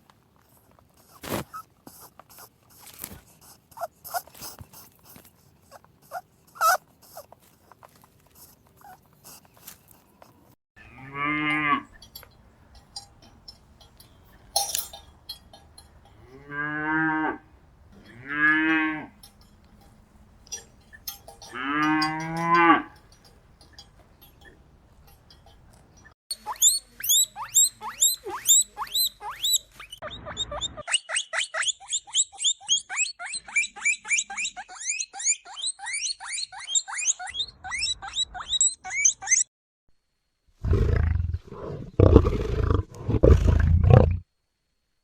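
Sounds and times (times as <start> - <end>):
cow mooing: 10.8 - 12.0, 16.1 - 19.3, 21.0 - 23.1.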